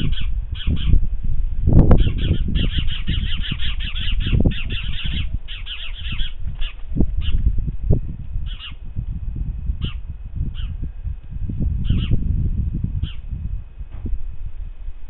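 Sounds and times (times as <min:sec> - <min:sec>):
bird harsh rapid calls: 0:00.0 - 0:01.0, 0:01.9 - 0:07.4, 0:08.4 - 0:08.8, 0:09.8 - 0:10.8, 0:11.8 - 0:12.2, 0:13.0 - 0:13.2
low rumble: 0:00.0 - 0:15.0.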